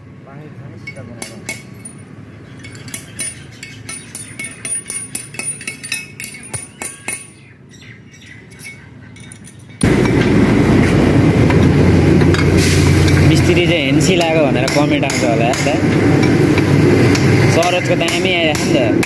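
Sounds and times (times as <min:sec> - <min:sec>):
metal tools clinking: 0:00.8 - 0:07.4, 0:08.5 - 0:10.2.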